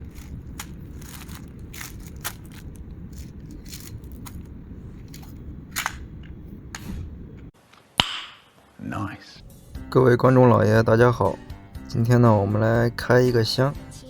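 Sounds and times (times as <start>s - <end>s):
packaging crinkling: 0.0s - 6.0s
low rumble: 0.0s - 7.5s, 9.4s - 13.0s.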